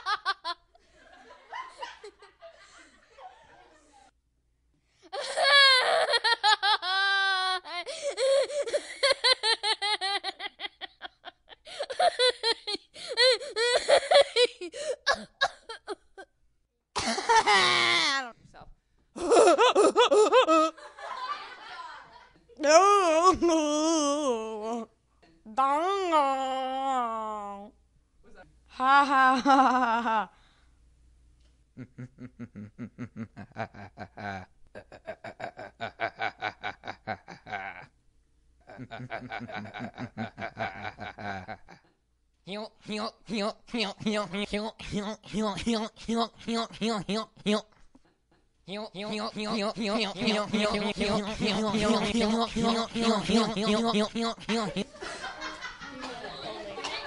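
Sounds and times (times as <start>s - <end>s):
child giggling: 0.0s - 0.7s, 5.2s - 16.3s, 17.0s - 18.2s, 19.2s - 22.0s, 28.8s - 30.3s, 48.9s - 57.0s.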